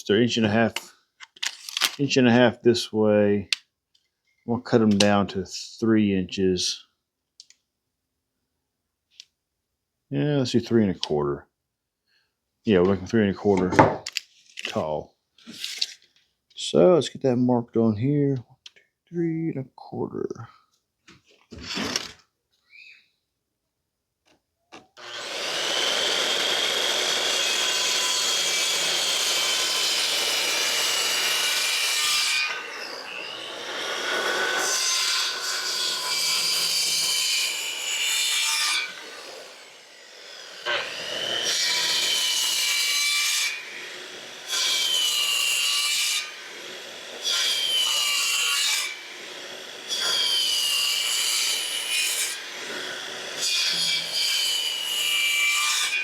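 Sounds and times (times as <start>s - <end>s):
electric saw cutting wood: 25.0s - 56.0s.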